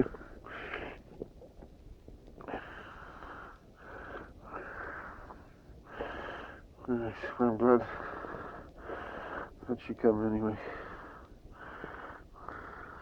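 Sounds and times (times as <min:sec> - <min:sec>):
wheezy breaths: 0:02.5 - 0:06.6, 0:07.8 - 0:09.6, 0:10.6 - 0:13.0.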